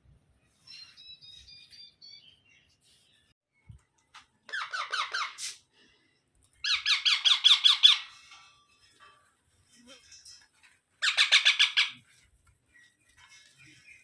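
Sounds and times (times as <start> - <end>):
baby parrot calling rapidly: 4.5 - 5.6, 6.6 - 8.1, 11.0 - 12.0.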